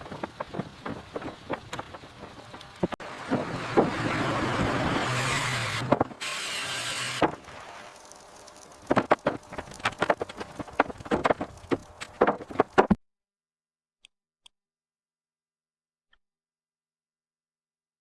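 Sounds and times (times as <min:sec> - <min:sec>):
power tool whirring: 0:03.1 - 0:08.0.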